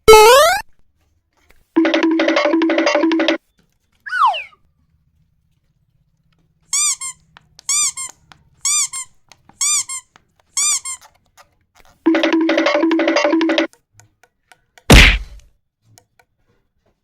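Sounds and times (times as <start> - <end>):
high double squeaks: 0.0 - 0.6, 4.1 - 4.6.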